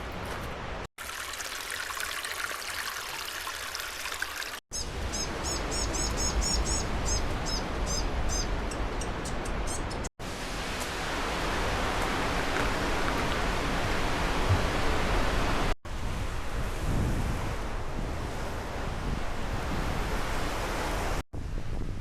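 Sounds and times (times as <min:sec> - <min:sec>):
bird chirping rapidly: 0:04.7 - 0:10.1.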